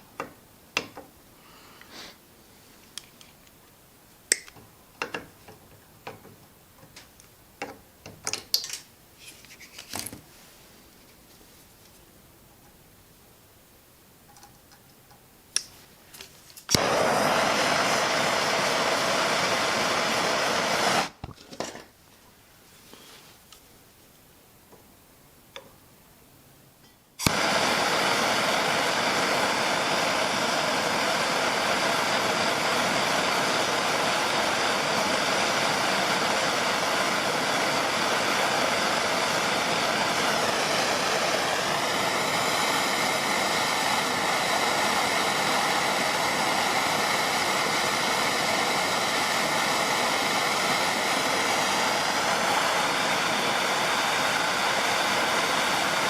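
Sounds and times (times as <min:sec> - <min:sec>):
gas torch burning: 0:15.5 - 0:21.3, 0:27.2 - 0:56.0
torch igniter click: 0:16.6 - 0:21.2, 0:27.2 - 0:56.0.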